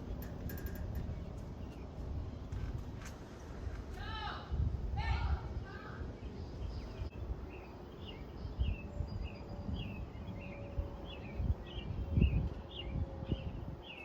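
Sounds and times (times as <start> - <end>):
low rumbling bumps: 0.0 - 3.9.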